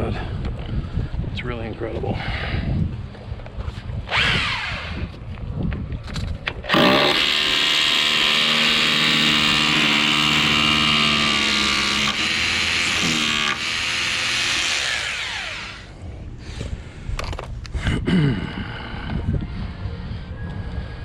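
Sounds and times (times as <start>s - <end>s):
electric drill running: 4.1s - 5.1s, 6.7s - 15.9s.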